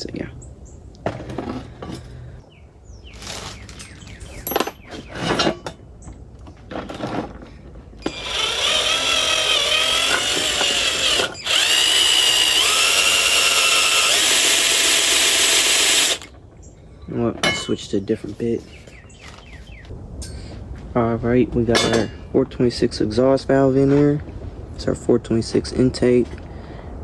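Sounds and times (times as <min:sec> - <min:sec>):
power drill whining: 0:08.0 - 0:16.3.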